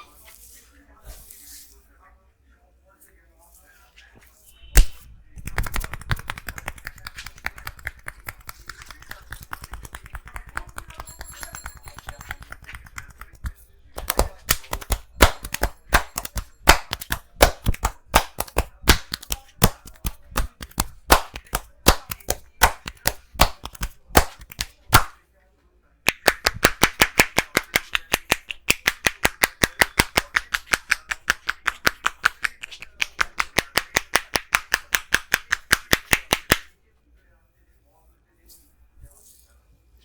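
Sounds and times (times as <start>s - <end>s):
hands slapping a head: 4.8s - 25.2s, 26.1s - 36.7s
hollow clap-like tapping: 4.8s - 25.2s, 26.1s - 36.7s.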